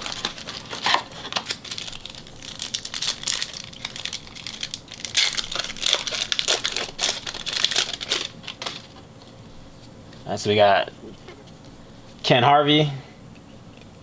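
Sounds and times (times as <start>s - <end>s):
wrapper being torn and crinkling: 0.0s - 9.0s.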